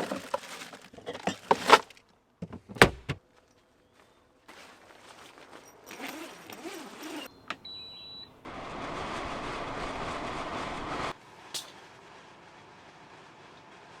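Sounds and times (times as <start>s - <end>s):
short electronic beep: 7.6s - 8.3s.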